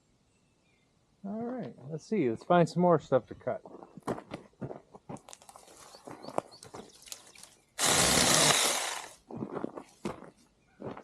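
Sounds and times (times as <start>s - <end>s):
footsteps crunching twigs and leaves: 3.6s - 7.6s, 8.6s - 11.0s.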